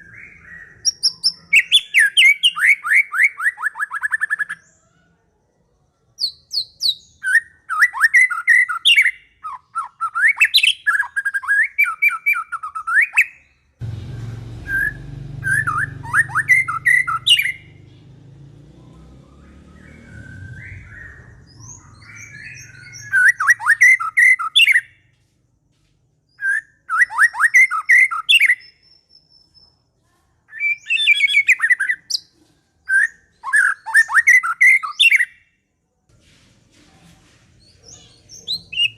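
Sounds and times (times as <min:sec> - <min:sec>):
songbird chirping and whistling: 0:00.0 - 0:04.8, 0:06.2 - 0:13.6, 0:14.7 - 0:17.8, 0:18.8 - 0:25.0, 0:26.3 - 0:29.7, 0:30.5 - 0:35.5, 0:37.6 - 0:38.9
low rumbling noise: 0:13.8 - 0:21.6.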